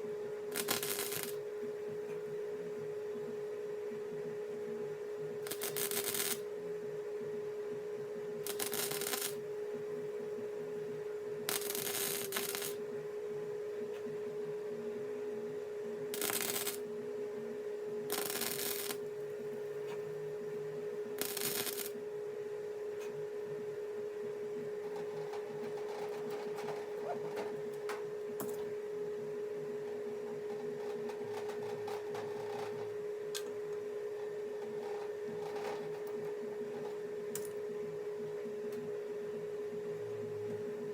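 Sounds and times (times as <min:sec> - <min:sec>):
steady hum: 0:00.0 - 0:40.9
welding bursts: 0:00.6 - 0:01.4, 0:05.5 - 0:06.4, 0:08.4 - 0:09.4, 0:11.5 - 0:12.8, 0:16.2 - 0:16.8, 0:18.1 - 0:19.0, 0:21.2 - 0:21.9.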